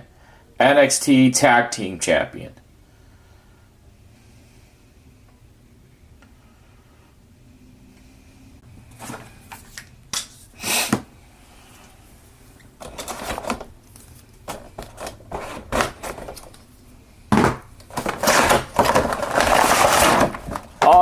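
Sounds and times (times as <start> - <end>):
packaging crinkling and rustling: 12.8 - 16.7, 17.4 - 21.0.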